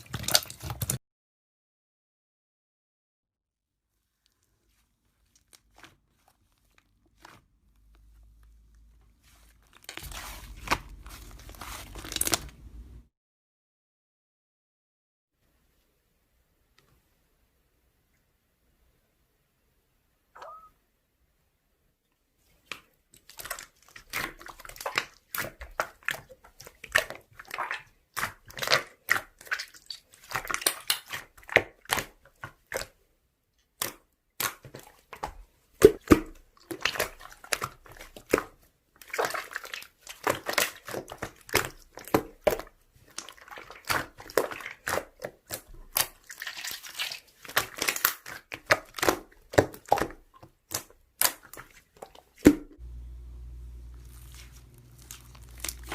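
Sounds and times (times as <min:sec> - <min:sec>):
slime crackling and popping: 0:09.6 - 0:12.6, 0:53.9 - 0:55.9.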